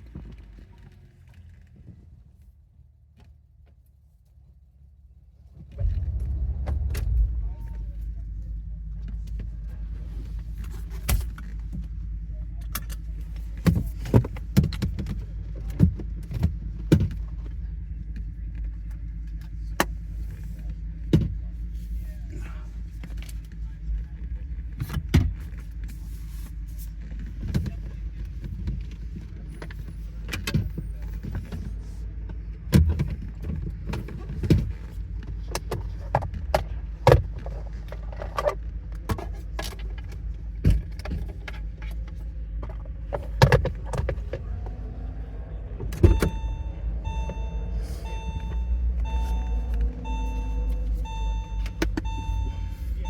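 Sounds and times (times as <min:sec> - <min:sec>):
car interior low rumble: 0:00.0 - 0:53.0
two-tone warning chime beeping: 0:46.0 - 0:53.0.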